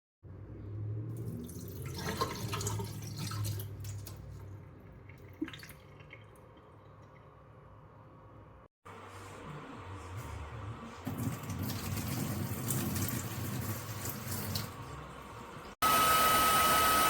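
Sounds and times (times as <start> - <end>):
water splashing and dripping: 1.1 - 7.2, 11.1 - 15.7.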